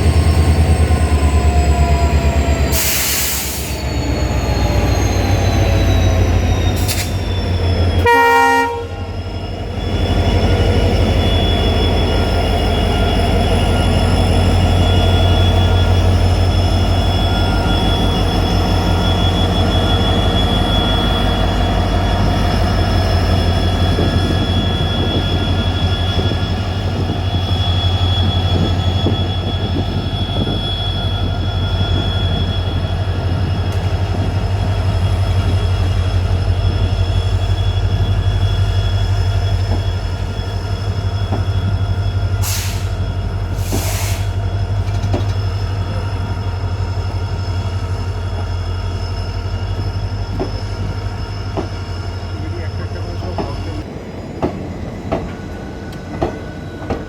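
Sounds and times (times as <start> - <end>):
diesel locomotive engine drone: 0.0 - 57.0
train horn blast: 8.0 - 9.2
air hiss: 43.6 - 44.4.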